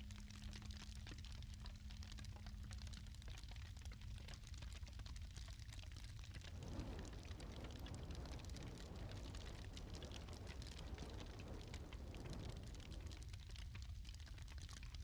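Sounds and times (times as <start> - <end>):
low rumble of flames: 0.0 - 15.0
wood fire crackling: 0.5 - 15.0
soft rushing: 6.4 - 13.3.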